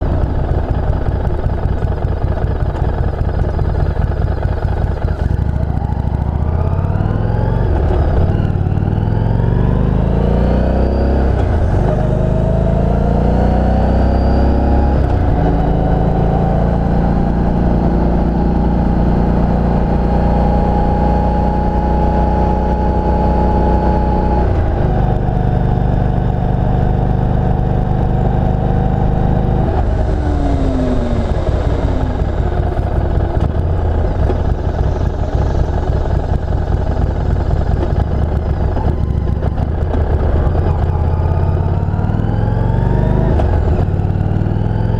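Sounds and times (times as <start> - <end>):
motorcycle engine accelerating: 0.0 - 44.9.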